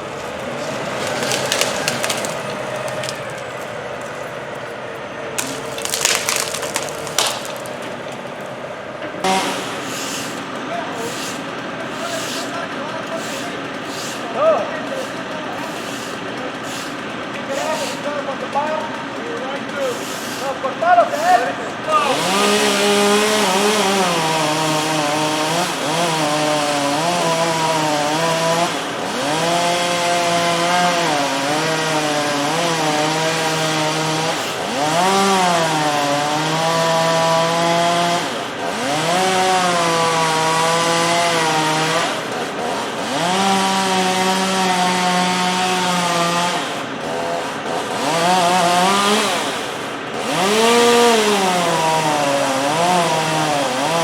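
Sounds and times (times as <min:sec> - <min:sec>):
chainsaw cutting wood: 0:00.0 - 0:04.3, 0:05.4 - 0:08.6, 0:09.2 - 0:10.5, 0:21.2 - 0:54.0.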